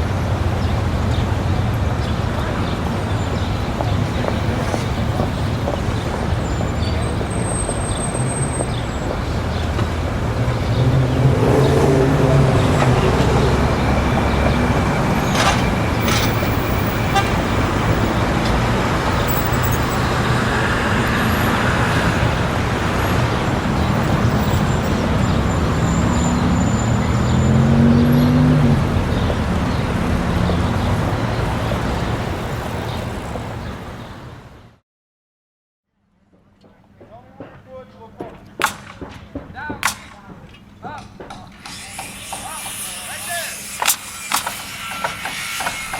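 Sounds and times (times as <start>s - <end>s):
cars and engines passing: 0.0s - 34.8s
car horn toots: 12.6s - 18.0s.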